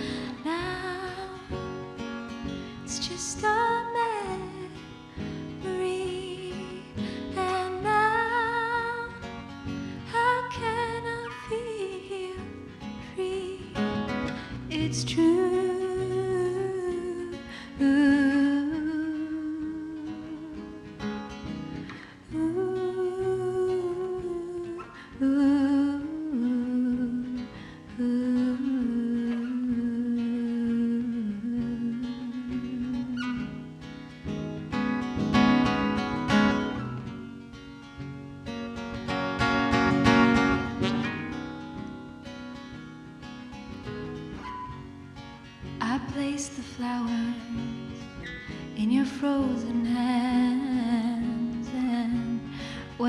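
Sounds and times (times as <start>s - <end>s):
acoustic guitar strumming: 0.0s - 53.0s.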